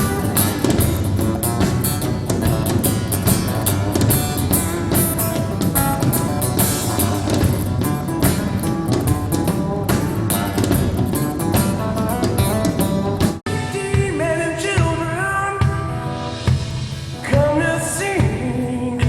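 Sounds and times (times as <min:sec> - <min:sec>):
drums: 0:00.0 - 0:19.0
strummed acoustic guitar: 0:00.0 - 0:19.0.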